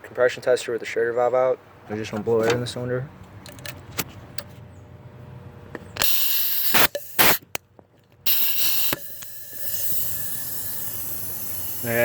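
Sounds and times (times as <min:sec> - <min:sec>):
compressed air hissing: 0:06.0 - 0:07.6, 0:08.3 - 0:12.0.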